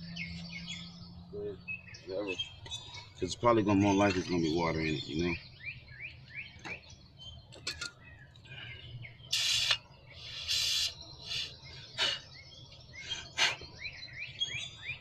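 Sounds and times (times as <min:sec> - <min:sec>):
small birds chirping: 0:00.0 - 0:15.0
short hissing bursts: 0:09.3 - 0:12.1.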